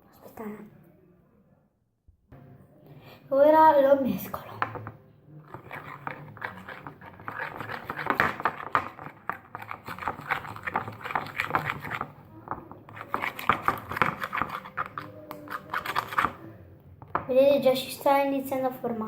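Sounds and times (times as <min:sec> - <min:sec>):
slime stirred in bowl: 0:04.2 - 0:16.6.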